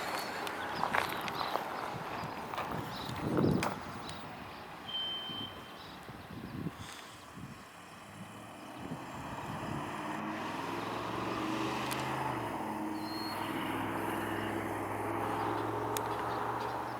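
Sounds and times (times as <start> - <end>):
vehicle engine running: 7.9 - 16.9.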